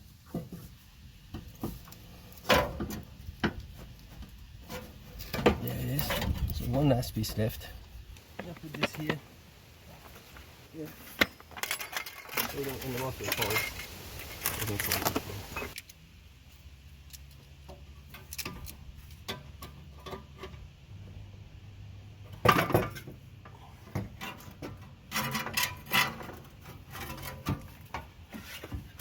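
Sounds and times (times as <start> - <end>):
metal exhaust parts clinking: 10.1 - 15.9, 17.0 - 21.3, 22.2 - 29.0.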